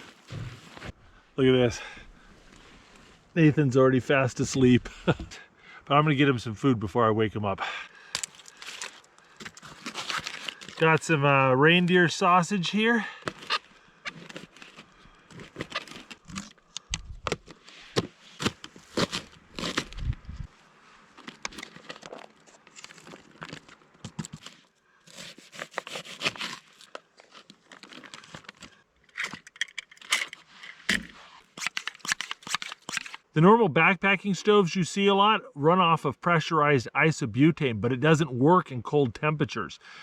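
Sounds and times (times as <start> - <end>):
plastic packaging crinkling: 8.2 - 11.0, 13.2 - 16.5, 17.4 - 20.2, 21.2 - 30.4.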